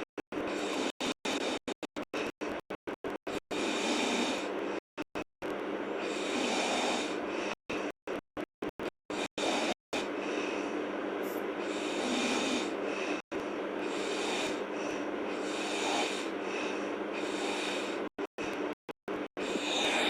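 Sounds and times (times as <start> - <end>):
girl snoring heavily: 3.5 - 4.6, 6.0 - 7.6, 9.2 - 10.1, 11.6 - 13.2, 13.8 - 18.0, 19.4 - 20.0.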